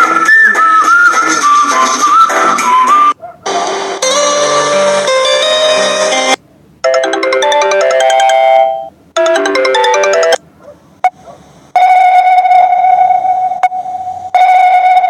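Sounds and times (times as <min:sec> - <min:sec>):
electronic ringtone melody: 0:04.0 - 0:10.4, 0:11.8 - 0:15.0
long held ringtone tone: 0:06.8 - 0:10.4, 0:11.8 - 0:15.0.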